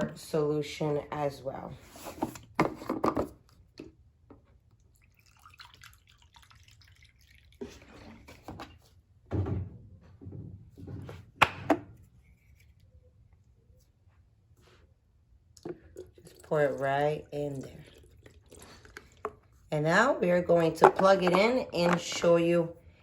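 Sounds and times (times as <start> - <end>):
liquid pouring into plastic tank: 4.7 - 8.7, 15.6 - 19.6.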